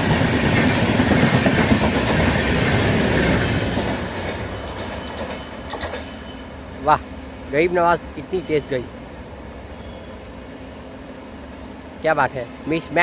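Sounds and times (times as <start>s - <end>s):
wheels clattering over rail joints: 0.0s - 6.2s
train rushing past: 0.0s - 13.0s.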